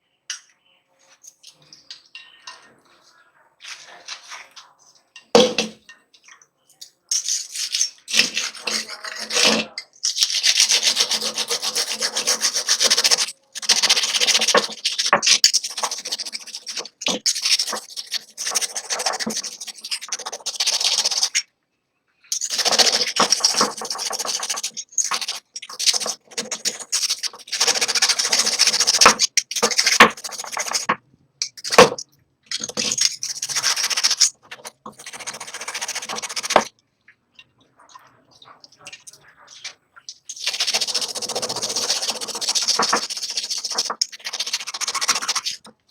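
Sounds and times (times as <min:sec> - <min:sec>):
scratchy scrubbing of saw blade: 0:10.3 - 0:21.4, 0:22.3 - 0:30.9, 0:31.5 - 0:36.7, 0:40.3 - 0:45.7.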